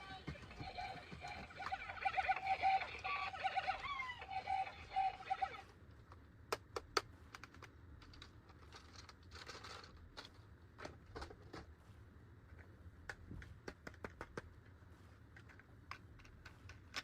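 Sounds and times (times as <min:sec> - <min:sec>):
sharp plastic clicks: 0:05.9 - 0:11.0.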